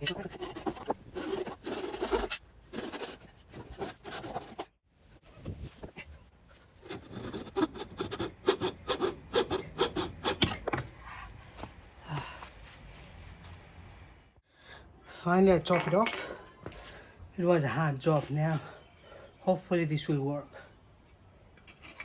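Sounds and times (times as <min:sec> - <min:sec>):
saw rasping through wood: 0:00.0 - 0:04.7, 0:06.8 - 0:10.7.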